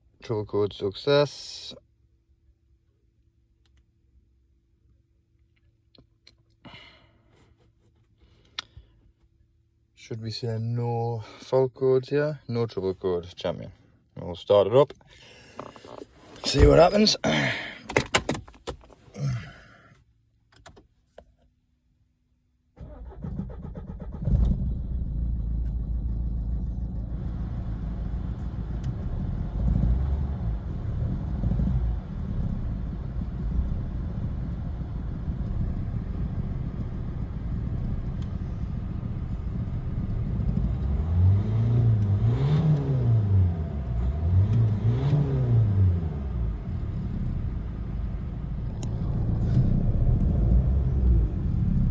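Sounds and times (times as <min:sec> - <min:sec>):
diesel engine starting and idling: 0:15.1 - 0:18.4, 0:22.8 - 0:51.9
engine revving: 0:22.9 - 0:51.9.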